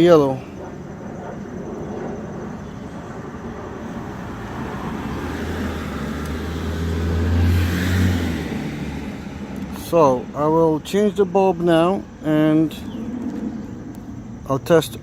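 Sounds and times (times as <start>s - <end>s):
vehicle passing by: 3.2s - 11.3s.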